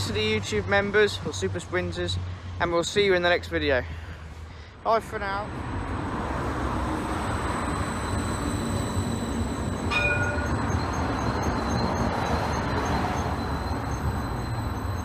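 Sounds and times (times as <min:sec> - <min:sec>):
tram rumble and electric whine: 0:05.1 - 0:15.0
short ringing tone: 0:06.0 - 0:15.0.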